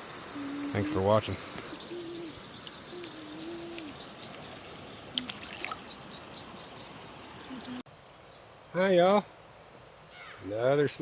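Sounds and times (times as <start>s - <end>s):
creek water running: 0.0s - 7.8s.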